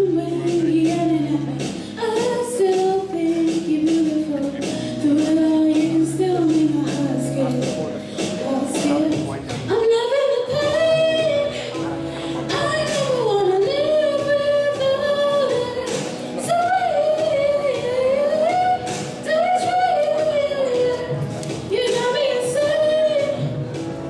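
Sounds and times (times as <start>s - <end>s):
woman singing: 0.0s - 24.0s.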